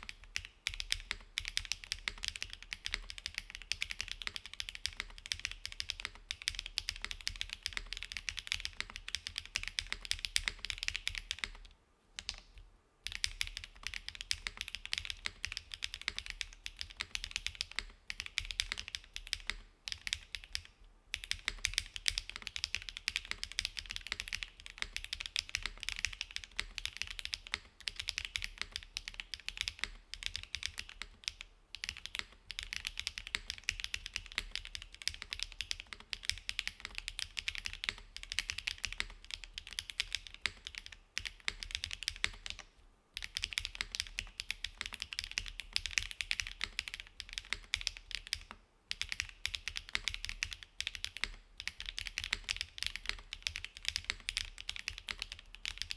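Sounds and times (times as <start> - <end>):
fast mechanical keyboard typing: 0.0 - 12.4, 13.1 - 42.6, 43.2 - 55.9.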